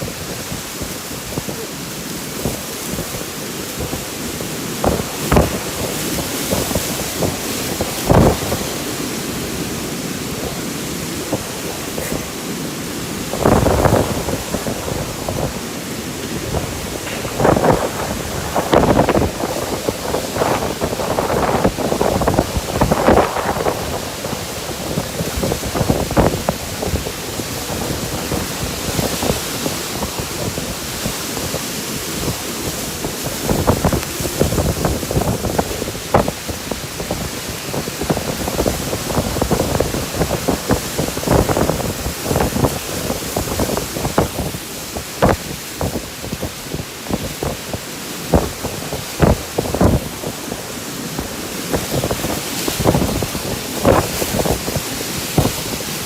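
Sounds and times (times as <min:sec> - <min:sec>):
heavy rain: 0:00.0 - 0:56.0
strong wind: 0:00.0 - 0:56.0
low gust or rumble: 0:13.0 - 0:27.6.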